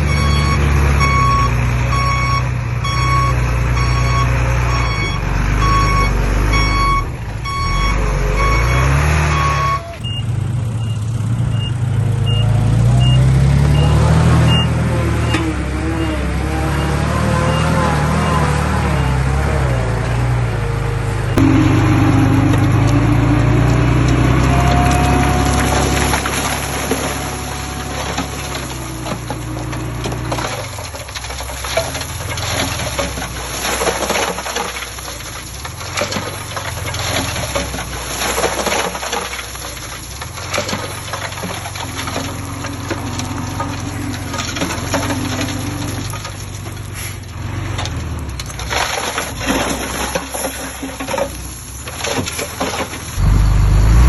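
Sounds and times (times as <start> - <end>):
diesel engine running: 0.0 - 54.0
soil and stones clattering: 21.4 - 53.3.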